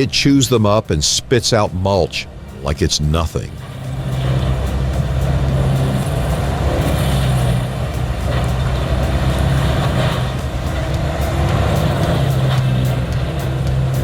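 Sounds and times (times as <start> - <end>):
wood grinder engine drone: 2.3 - 14.0
hammers grinding wood: 3.5 - 14.0.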